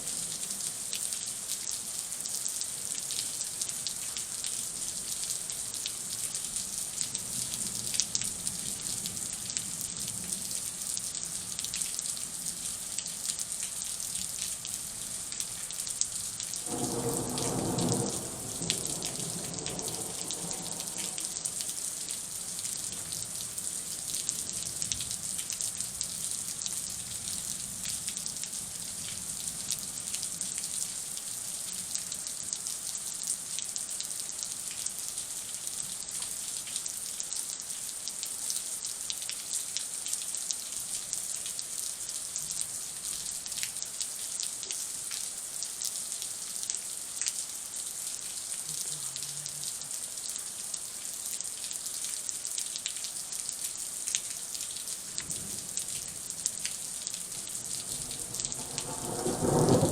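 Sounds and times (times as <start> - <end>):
raindrops striking close by: 0.0 - 59.9
heavy rain hissing: 16.3 - 24.1, 47.6 - 51.0, 55.0 - 59.9.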